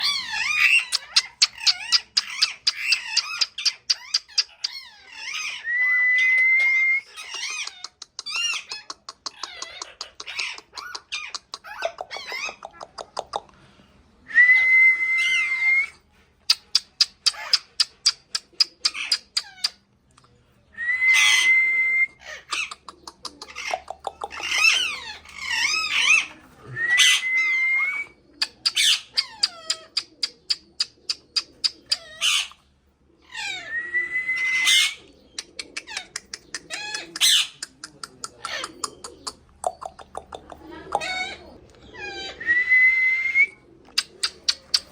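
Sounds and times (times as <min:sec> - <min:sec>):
parrot chirps and squawks: 0:00.0 - 0:05.7, 0:07.0 - 0:13.5, 0:16.5 - 0:19.9, 0:21.1 - 0:21.5, 0:22.2 - 0:33.7, 0:34.4 - 0:42.5
parrot rising whistle: 0:26.8 - 0:28.2, 0:33.6 - 0:35.0.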